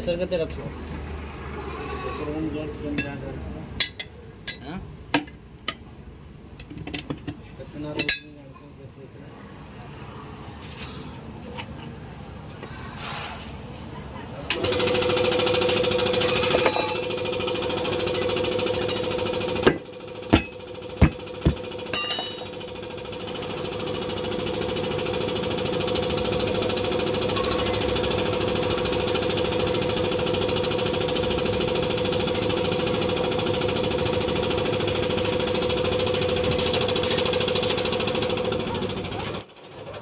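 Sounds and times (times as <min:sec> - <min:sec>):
air compressor humming: 0:14.5 - 0:39.7
sharp metallic knocks: 0:18.9 - 0:22.6.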